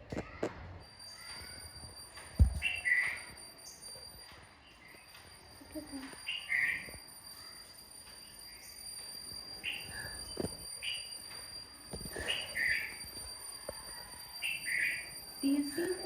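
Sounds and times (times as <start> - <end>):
small birds chirping: 2.4 - 3.9, 4.6 - 8.9, 9.6 - 11.2, 11.9 - 13.2, 13.8 - 16.0.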